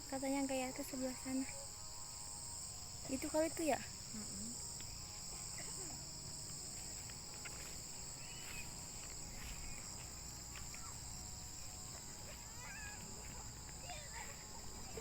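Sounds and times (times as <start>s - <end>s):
high-pitched insect chorus: 0.0s - 15.0s.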